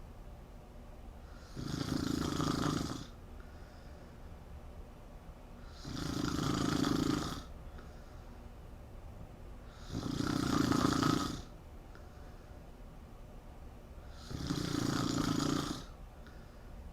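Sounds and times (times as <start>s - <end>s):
woman snoring: 1.3s - 3.2s, 5.6s - 7.5s, 9.7s - 11.5s, 14.1s - 16.0s.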